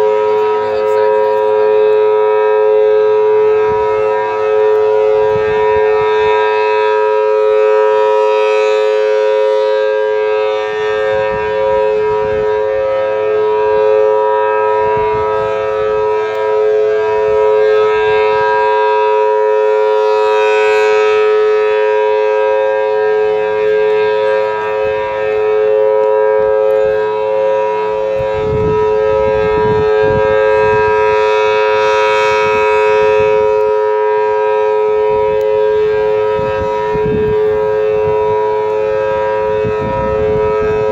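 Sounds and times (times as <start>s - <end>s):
warning siren alert tone: 0.0s - 40.9s
low rumbling: 23.9s - 31.1s.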